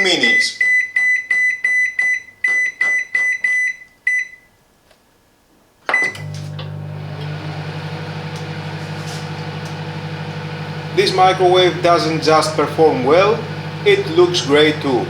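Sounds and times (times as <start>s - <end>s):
microwave oven humming: 6.0s - 15.0s.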